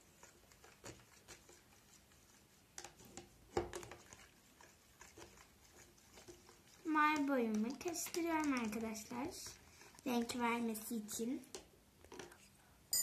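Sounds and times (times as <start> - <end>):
sticky clicks and squelches: 6.1 - 12.4.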